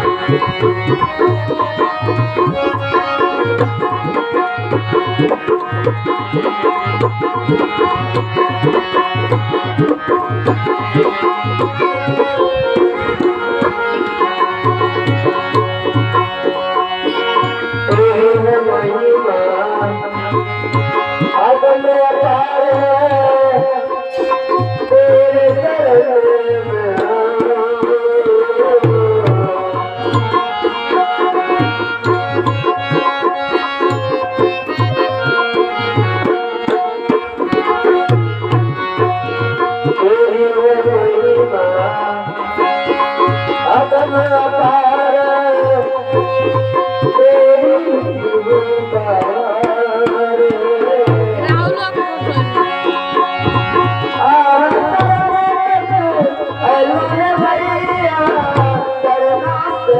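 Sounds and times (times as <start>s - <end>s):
tabla rhythm: 0.0s - 59.9s
gliding melodic instrument: 29.9s - 40.0s, 51.3s - 54.5s.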